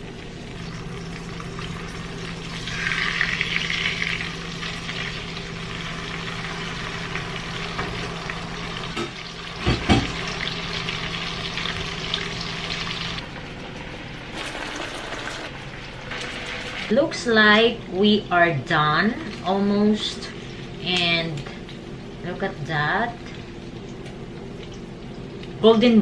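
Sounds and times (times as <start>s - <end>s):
fish frying in hot oil: 0.0s - 18.2s.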